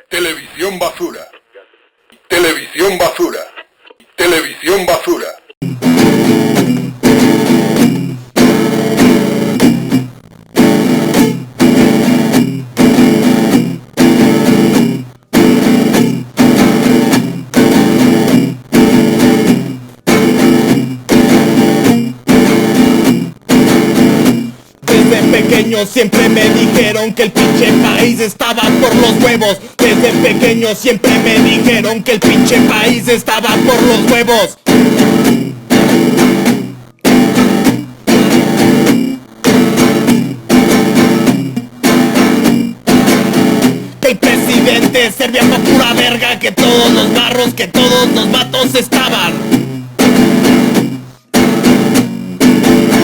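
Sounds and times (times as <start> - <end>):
guitar chords ringing: 5.6 - 53.0.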